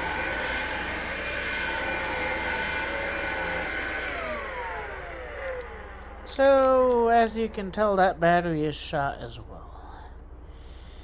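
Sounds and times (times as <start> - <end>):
vacuum motor whining and winding down: 0.0 - 7.6.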